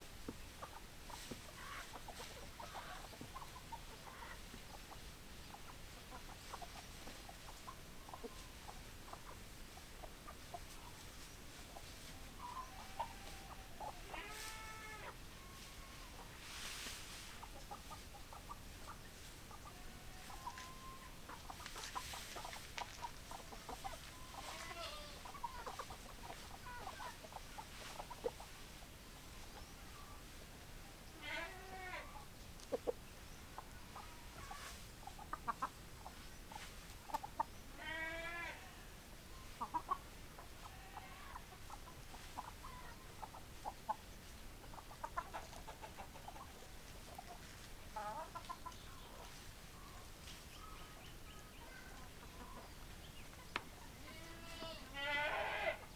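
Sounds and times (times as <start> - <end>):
hens clucking: 0.0 - 55.9
rustling: 10.6 - 18.0, 18.8 - 28.8.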